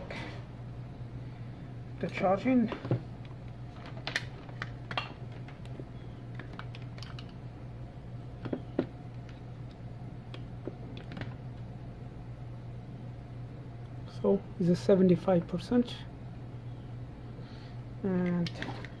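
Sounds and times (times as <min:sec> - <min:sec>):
low electrical hum: 0:00.0 - 0:19.0
plastic parts clicking: 0:06.3 - 0:07.4.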